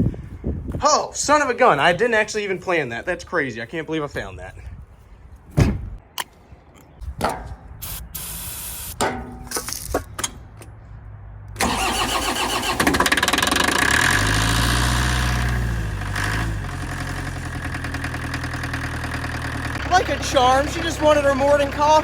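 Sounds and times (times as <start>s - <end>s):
forklift engine starting and revving: 11.5s - 22.0s.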